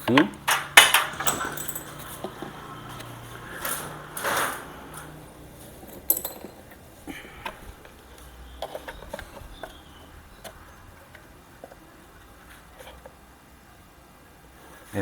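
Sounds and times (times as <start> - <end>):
hands handling small hardware: 0.5 - 11.9.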